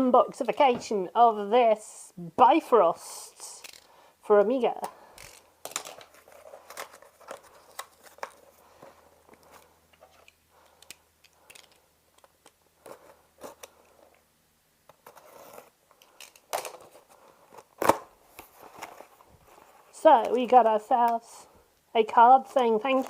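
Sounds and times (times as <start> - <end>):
packaging crinkling and rustling: 5.2 - 14.0, 14.9 - 20.5.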